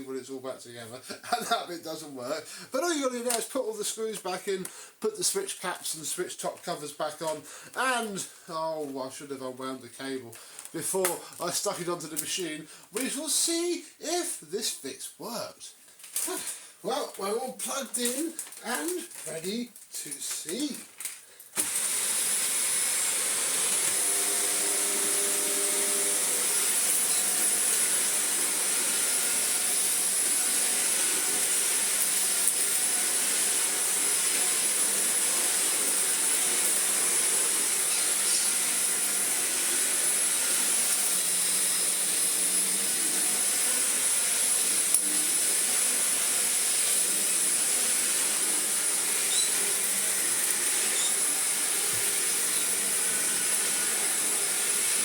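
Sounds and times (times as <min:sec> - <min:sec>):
vacuum cleaner motor whining: 0:21.6 - 0:55.0.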